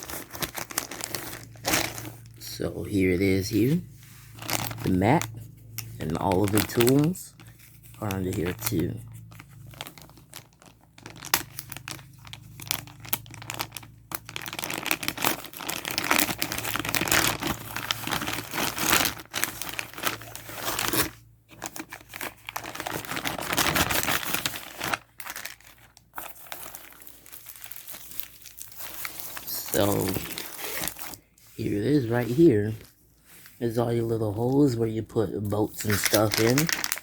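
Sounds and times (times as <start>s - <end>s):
packaging crinkling and tearing: 0.0s - 2.4s, 3.5s - 32.9s, 35.5s - 37.0s.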